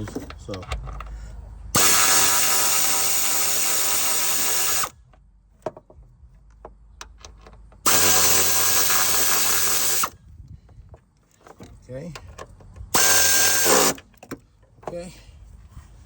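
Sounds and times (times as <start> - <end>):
power drill running: 1.8 - 4.9, 7.8 - 10.1, 12.9 - 14.0.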